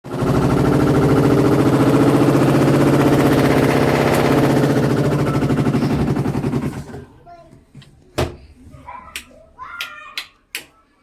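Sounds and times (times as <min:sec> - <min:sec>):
washing machine rattle: 0:00.0 - 0:07.1
motor hum: 0:00.1 - 0:07.0.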